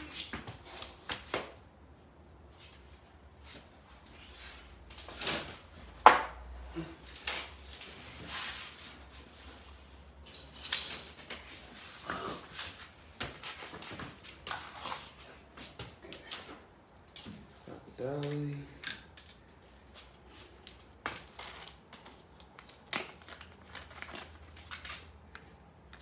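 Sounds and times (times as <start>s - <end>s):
metallic clinks of hand tools: 19.1s - 20.0s.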